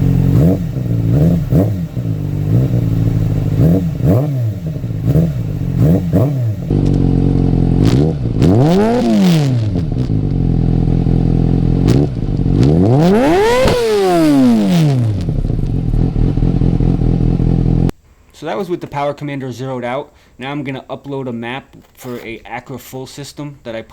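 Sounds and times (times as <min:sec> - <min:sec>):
motorcycle engine idling and revving: 0:00.0 - 0:17.9.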